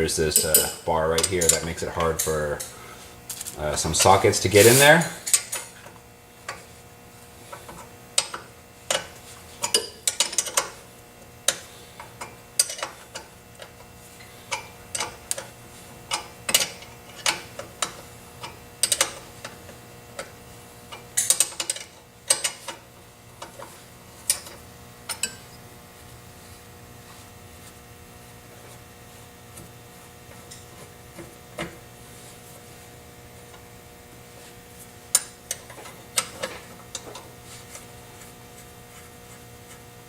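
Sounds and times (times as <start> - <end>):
wrench clicking on metal: 16.1 - 19.6, 20.9 - 22.8.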